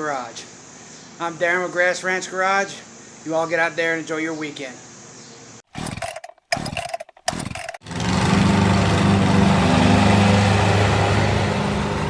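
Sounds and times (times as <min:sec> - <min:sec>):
mower engine pull-start cranking: 0:05.7 - 0:09.0
mower engine running: 0:05.8 - 0:12.0.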